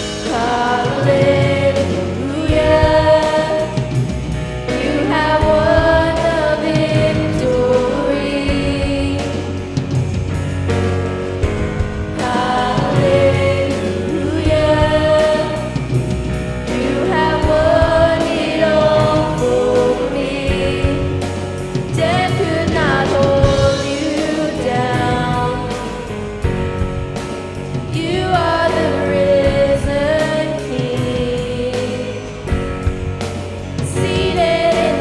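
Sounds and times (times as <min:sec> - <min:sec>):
voices singing: 0:00.0 - 0:10.1, 0:12.2 - 0:26.6, 0:27.6 - 0:32.6, 0:33.6 - 0:35.0
band with steady drum beat: 0:00.0 - 0:35.0.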